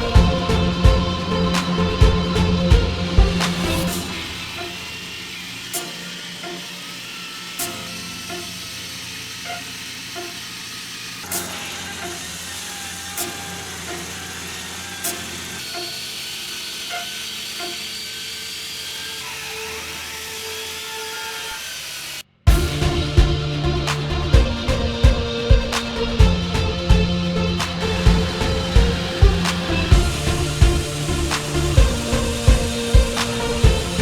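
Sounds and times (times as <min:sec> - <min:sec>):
soft background music with beat: 0:00.0 - 0:04.2, 0:22.5 - 0:34.0
engine-driven machinery running: 0:00.0 - 0:34.0.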